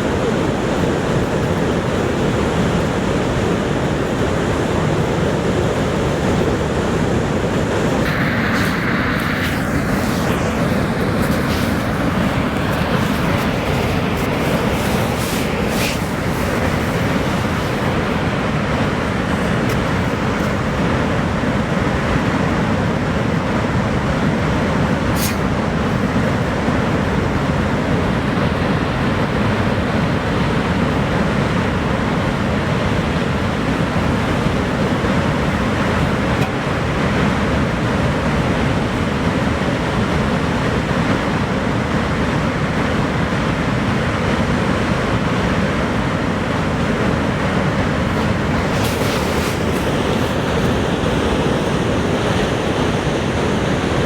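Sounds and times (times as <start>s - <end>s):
waterfall rushing: 8.0s - 20.9s, 47.8s - 52.0s.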